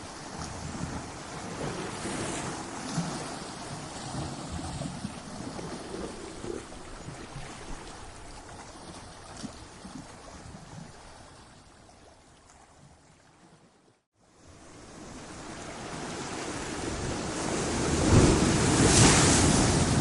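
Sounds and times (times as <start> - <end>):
waves breaking against rocks: 15.4 - 20.0.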